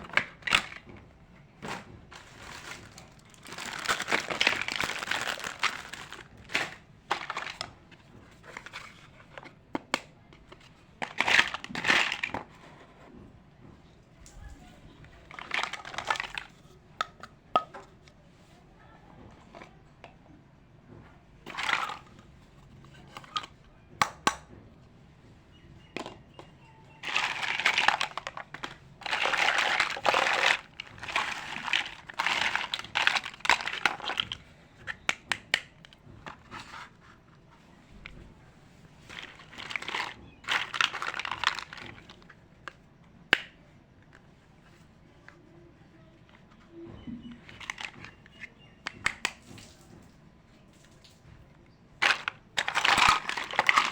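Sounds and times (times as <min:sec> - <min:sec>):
plastic packaging crinkling: 0:01.6 - 0:07.8, 0:15.1 - 0:16.6, 0:26.9 - 0:35.1, 0:39.0 - 0:42.3, 0:52.0 - 0:53.9
plastic pieces clicking: 0:26.9 - 0:36.4, 0:39.1 - 0:42.3, 0:52.0 - 0:53.9.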